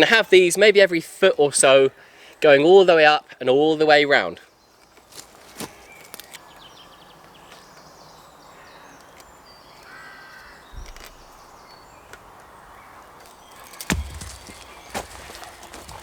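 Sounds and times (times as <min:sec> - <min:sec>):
bird calls: 0:04.5 - 0:16.0.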